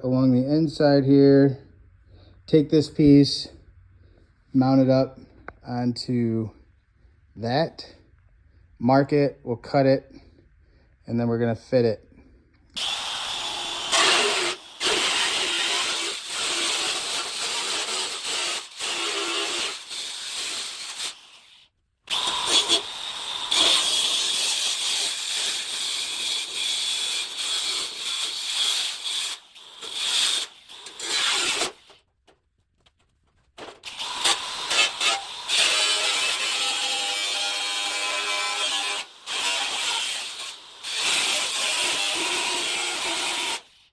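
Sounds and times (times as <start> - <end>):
power tool cutting sheet metal: 12.8 - 32.0, 33.6 - 43.9.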